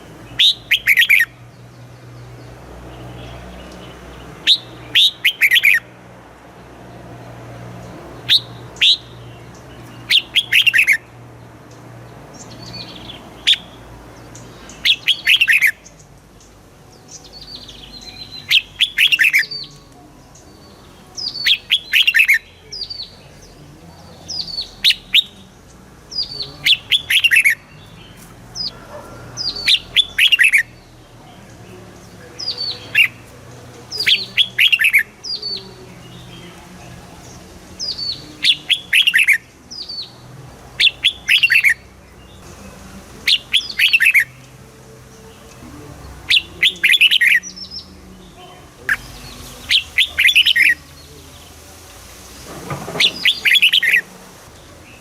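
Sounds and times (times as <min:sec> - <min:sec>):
bulbul singing: 0:00.0 - 0:55.0.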